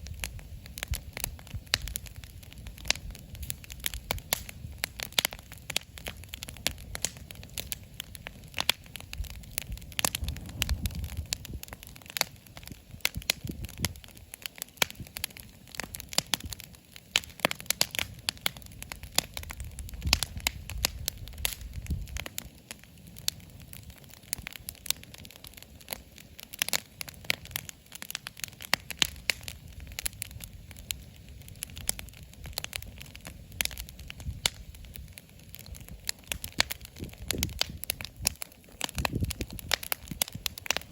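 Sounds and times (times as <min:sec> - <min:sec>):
campfire crackling and popping: 0:00.0 - 0:40.9
low rumble: 0:09.2 - 0:12.0.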